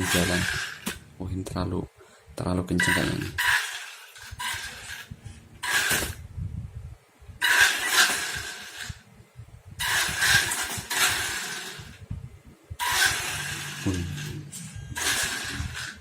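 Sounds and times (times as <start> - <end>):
toy car electric motor whirring: 0.0 - 1.0, 2.8 - 6.2, 7.4 - 9.0, 9.8 - 12.0, 12.8 - 16.0.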